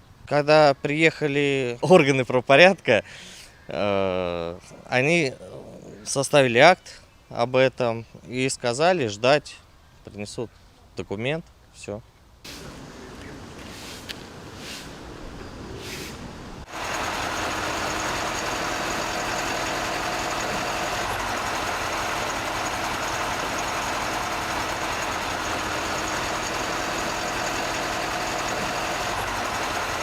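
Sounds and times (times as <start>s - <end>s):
heavy vehicle engine idling: 12.5s - 14.0s, 14.6s - 30.0s.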